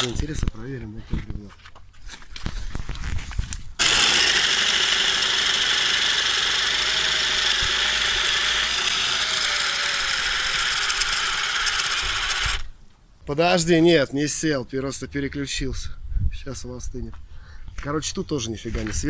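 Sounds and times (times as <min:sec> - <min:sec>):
cordless drill boring into log: 0:03.8 - 0:12.7.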